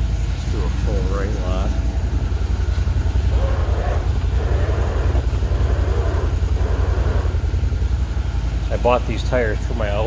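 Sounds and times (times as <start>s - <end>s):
engine idling with low rumble: 0.0s - 10.0s.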